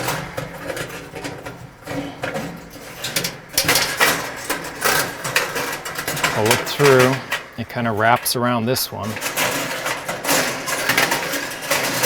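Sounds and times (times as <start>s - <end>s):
metallic scraping and rattling: 0.0s - 8.2s, 9.0s - 12.0s.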